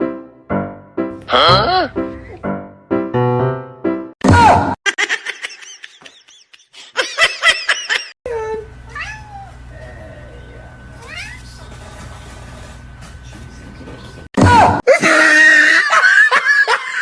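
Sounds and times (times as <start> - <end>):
cats meowing: 8.9 - 9.7, 11.0 - 11.6.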